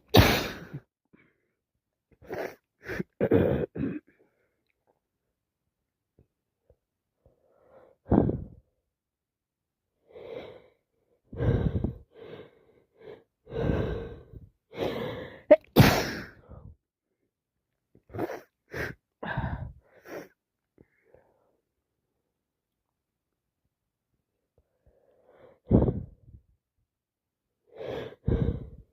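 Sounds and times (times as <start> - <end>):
person sneezing: 0.0 - 0.8, 15.5 - 16.4
person breathing: 7.2 - 8.6, 10.0 - 15.5, 18.2 - 21.6, 24.6 - 26.4, 27.7 - 28.9.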